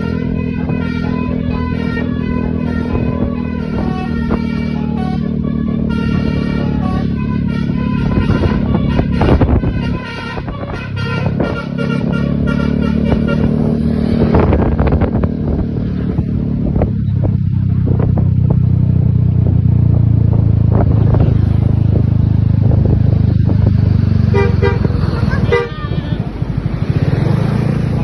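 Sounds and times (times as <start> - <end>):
bus horn tones: 0.0 - 13.9, 24.2 - 26.5
bus diesel engine drone: 0.0 - 28.0.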